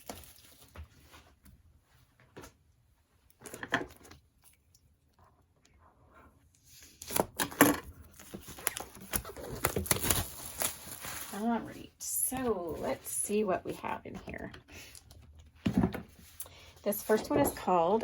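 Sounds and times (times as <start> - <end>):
plastic wrapping crinkling: 0.0 - 1.0, 8.0 - 11.9
paper rustling: 6.8 - 11.9.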